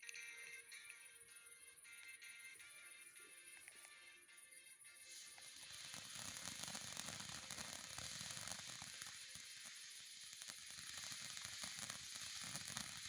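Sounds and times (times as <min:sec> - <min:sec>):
firework hissing and crackling: 0:04.9 - 0:13.0.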